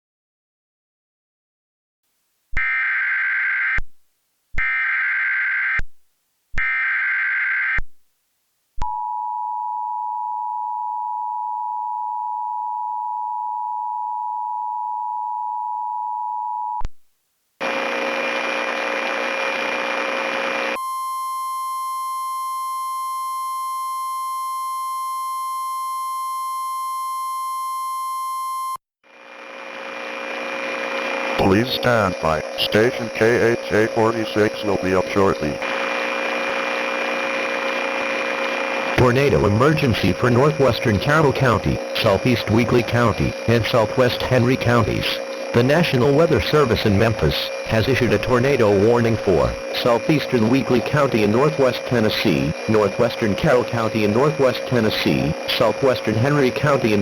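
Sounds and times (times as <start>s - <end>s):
single steady tone: 8.8s - 17.0s
harsh buzzing: 29.1s - 57.0s.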